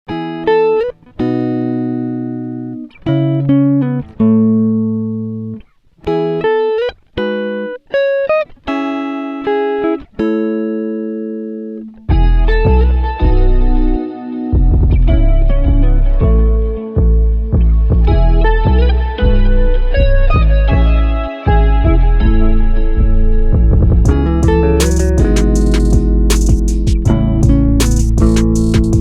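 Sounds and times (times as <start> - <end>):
music with deep bass: 12.1 - 29.0
struck chords ringing: 24.1 - 29.0.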